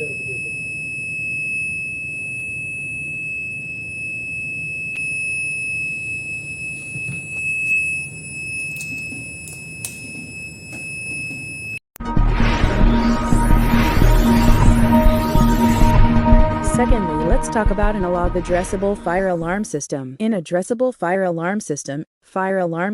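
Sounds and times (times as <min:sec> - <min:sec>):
alarm buzzer continuous tone: 0:00.0 - 0:11.8, 0:13.0 - 0:18.8.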